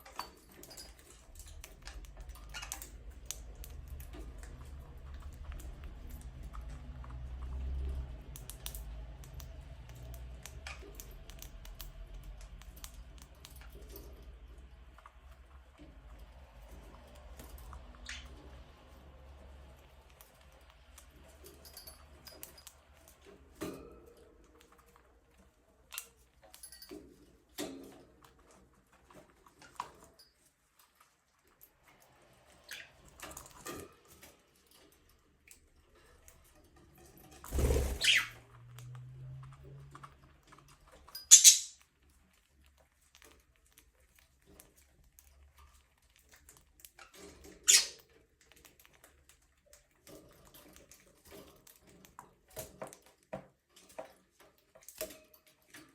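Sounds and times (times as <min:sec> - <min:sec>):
budgerigars chirping: 0:37.6 - 0:38.4, 0:41.3 - 0:41.8.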